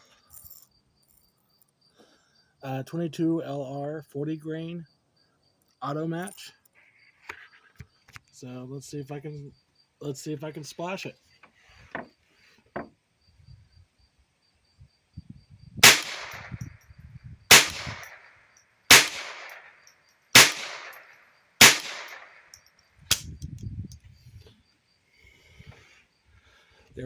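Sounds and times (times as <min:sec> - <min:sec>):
rifle shots echoing: 0:15.8 - 0:16.7, 0:17.5 - 0:18.3, 0:18.9 - 0:23.2.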